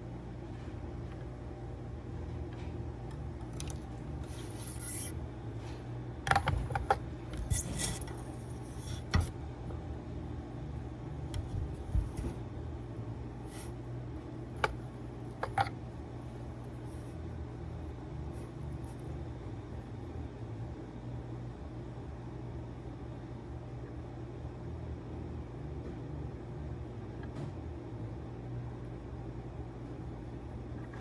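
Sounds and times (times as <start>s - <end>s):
steady low hum: 0.0s - 31.0s
small tools clicking and scraping: 3.5s - 5.2s, 6.3s - 9.4s, 14.6s - 15.8s.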